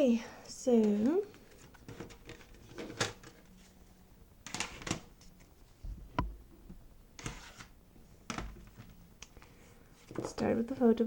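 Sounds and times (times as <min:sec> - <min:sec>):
cards and paper rustling: 0:00.8 - 0:03.8.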